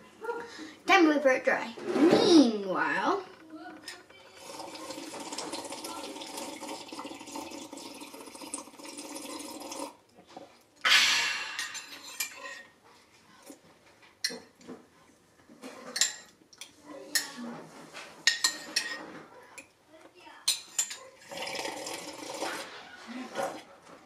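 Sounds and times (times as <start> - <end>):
dishes and utensils clinking: 3.2 - 7.6, 10.4 - 12.8, 14.2 - 14.8, 15.5 - 19.8, 20.4 - 21.6
tap water running into sink: 4.4 - 10.0.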